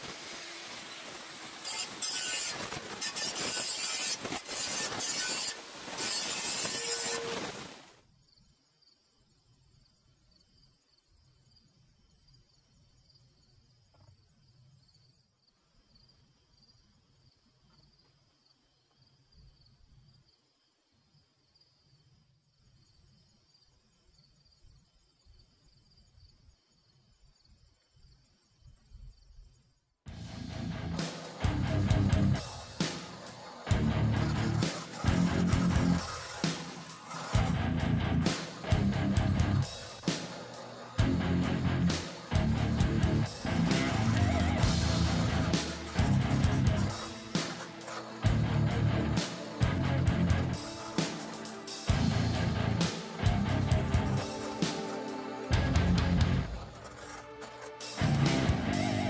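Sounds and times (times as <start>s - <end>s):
metal grinding or welding: 0.0s - 7.9s, 30.1s - 59.0s
crickets chirring: 0.1s - 30.0s, 32.2s - 37.5s, 43.2s - 48.3s
high insect trill: 0.1s - 30.0s, 31.0s - 39.0s, 39.6s - 55.5s
guitar and drum music: 30.1s - 59.0s.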